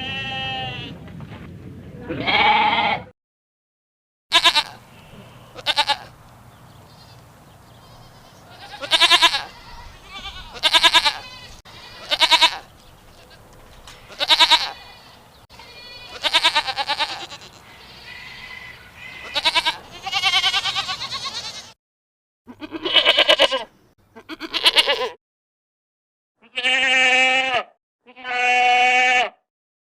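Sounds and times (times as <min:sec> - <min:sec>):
goats bleating: 0:00.0 - 0:00.9, 0:02.1 - 0:03.1, 0:04.3 - 0:06.1, 0:07.8 - 0:21.8, 0:22.5 - 0:25.2, 0:26.4 - 0:29.4.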